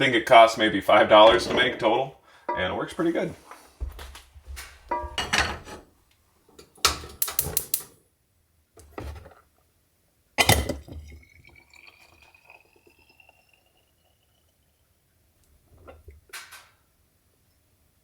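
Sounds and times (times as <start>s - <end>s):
pots clanking: 0.8s - 3.4s, 4.8s - 5.9s, 10.4s - 11.0s
liquid pouring into container: 10.4s - 16.1s.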